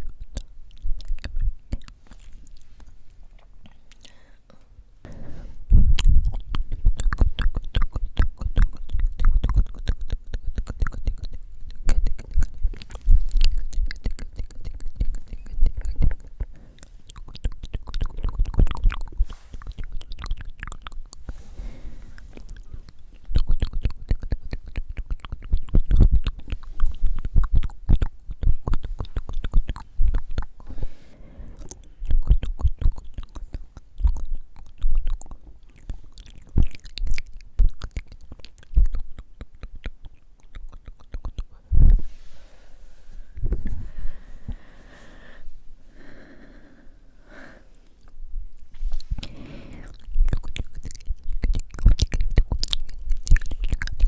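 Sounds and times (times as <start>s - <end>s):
wet tongue and lip clicks: 0.0s - 4.7s, 5.6s - 31.0s, 31.6s - 42.1s, 48.0s - 54.0s.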